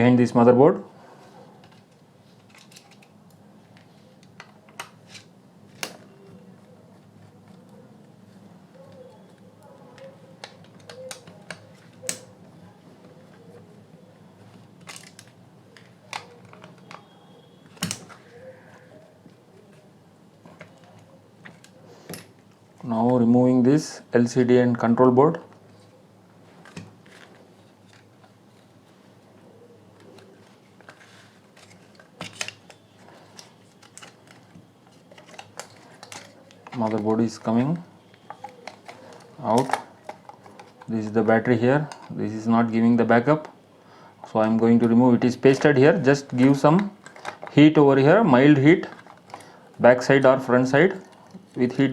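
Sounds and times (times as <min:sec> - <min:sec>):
faint steady hum: 0:00.0 - 0:51.9
small plastic clicks and handling: 0:46.3 - 0:47.6.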